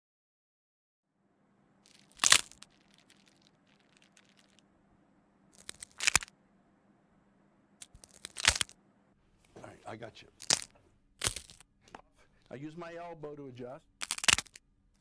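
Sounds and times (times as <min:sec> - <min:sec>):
crunching and cracking: 0:01.9 - 0:04.6, 0:05.6 - 0:06.3, 0:07.8 - 0:08.8, 0:10.4 - 0:11.6, 0:14.0 - 0:14.6.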